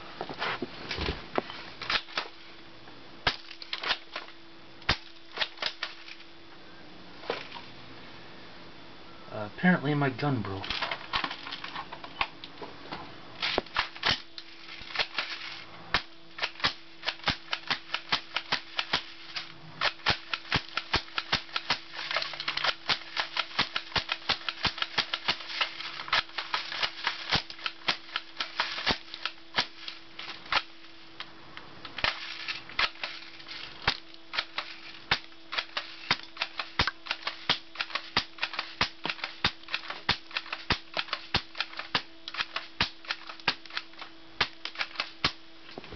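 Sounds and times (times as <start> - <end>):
faint steady hum: 0.0 - 45.9
airsoft shotgun shots: 19.8 - 29.8, 33.8 - 45.4.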